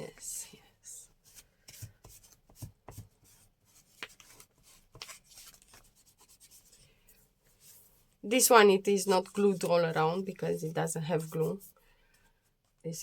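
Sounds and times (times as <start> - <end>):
soft paper rustles: 1.1 - 8.2, 9.0 - 12.9.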